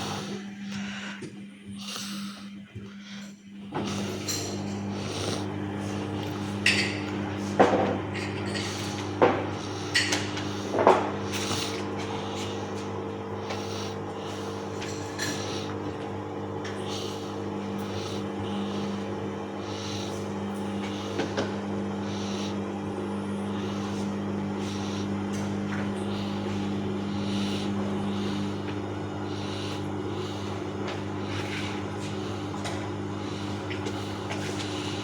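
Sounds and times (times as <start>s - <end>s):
washing machine hum: 0.0s - 35.0s.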